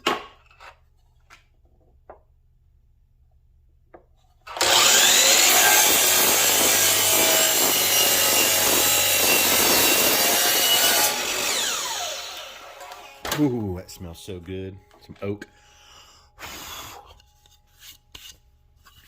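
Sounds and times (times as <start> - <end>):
power saw cutting wood: 4.5 - 13.5.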